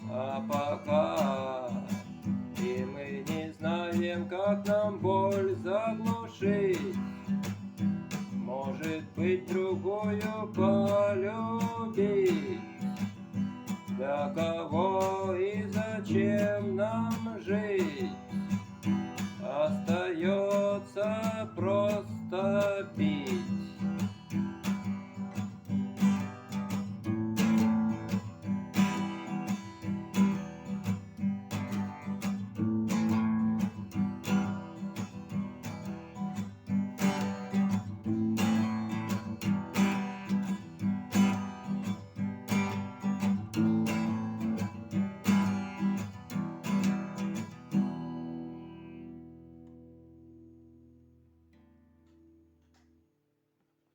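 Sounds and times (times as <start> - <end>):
person singing: 0.0 - 7.3, 8.4 - 13.0, 13.9 - 18.4, 19.3 - 23.8
strummed acoustic guitar: 0.0 - 53.2.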